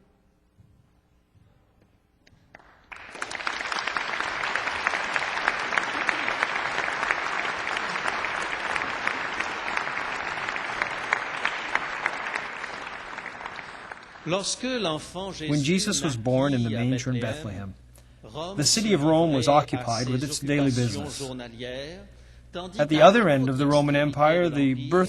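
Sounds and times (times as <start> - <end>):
audience applauding: 2.5 - 14.8.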